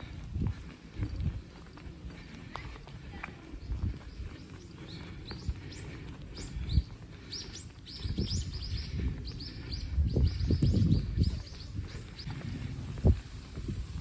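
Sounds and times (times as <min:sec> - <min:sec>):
small birds chirping: 0:00.0 - 0:13.3
low rumbling noise: 0:08.8 - 0:14.0.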